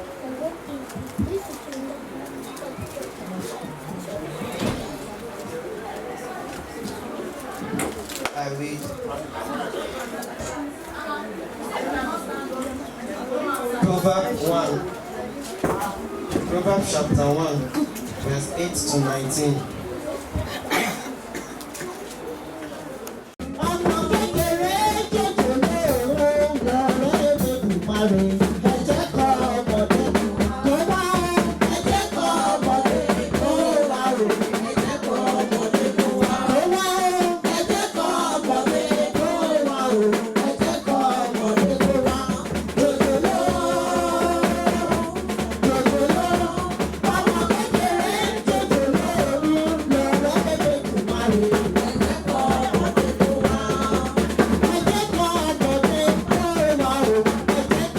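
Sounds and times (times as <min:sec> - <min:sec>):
drum kit beat: 0:23.4 - 0:57.9
singing: 0:23.4 - 0:57.9.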